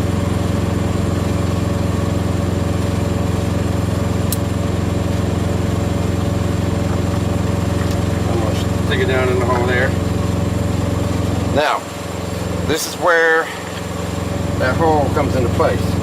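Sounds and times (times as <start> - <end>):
diesel engine idling: 0.0 - 16.0
short click: 4.3 - 4.5.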